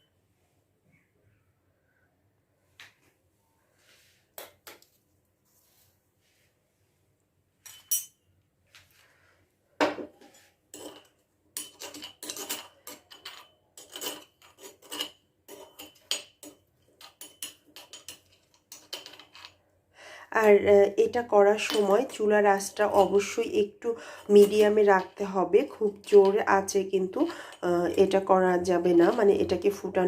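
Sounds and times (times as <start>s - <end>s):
knocks and clinks: 7.6s - 8.3s, 9.8s - 19.6s.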